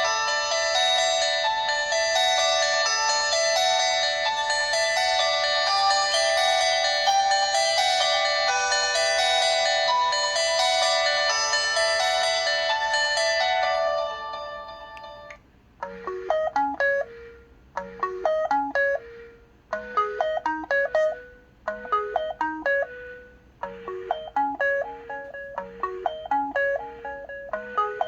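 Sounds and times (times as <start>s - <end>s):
jazz alarm ringtone: 5.4s - 10.3s
fuller phone tone: 6.9s - 8.4s.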